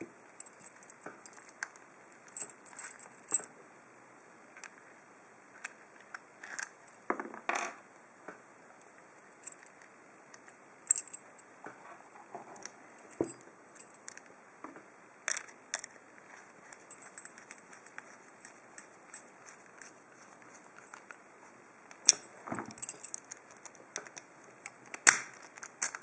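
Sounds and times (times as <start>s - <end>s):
padlock parts clinking: 0.4s - 3.5s, 8.8s - 11.5s, 12.6s - 14.3s, 15.3s - 21.2s, 21.9s - 26.0s.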